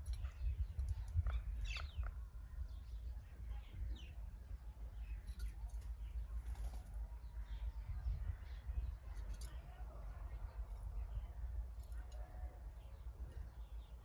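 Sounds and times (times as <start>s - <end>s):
small birds chirping: 0.0s - 9.4s.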